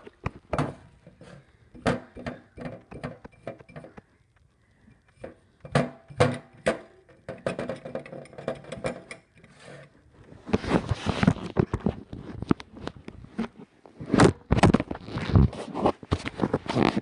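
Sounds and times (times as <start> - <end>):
sharp knocks and clatters: 0.0 - 4.1, 4.9 - 9.6.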